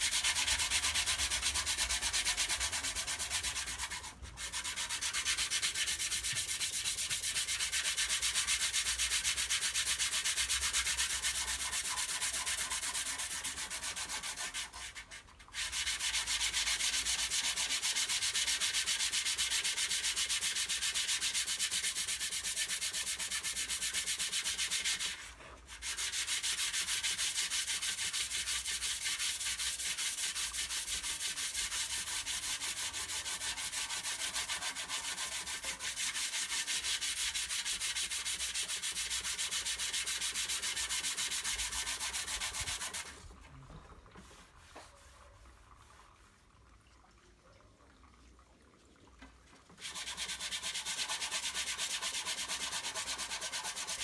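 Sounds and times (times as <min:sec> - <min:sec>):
sanding body filler: 0:25.8 - 0:43.1, 0:49.8 - 0:54.0.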